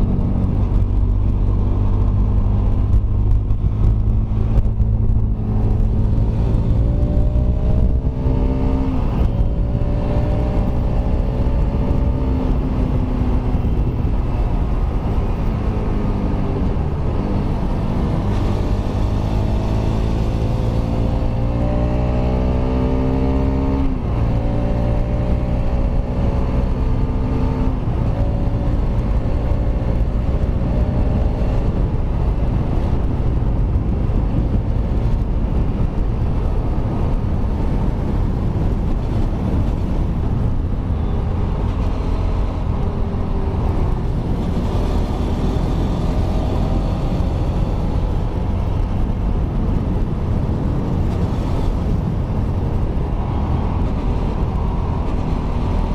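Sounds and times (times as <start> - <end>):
motorcycle engine accelerating: 0.0 - 55.9.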